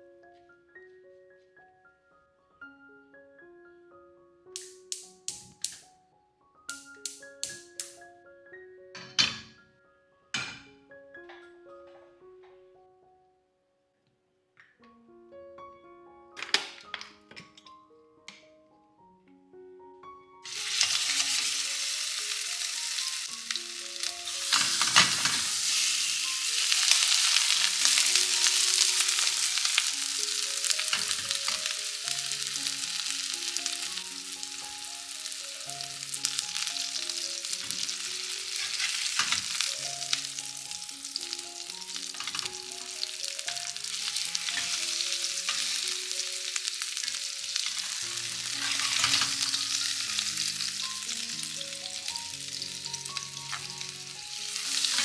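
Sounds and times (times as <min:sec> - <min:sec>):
soft background music: 0:00.0 - 0:55.0
food sizzling in a pan: 0:06.7 - 0:08.0, 0:20.4 - 0:55.0.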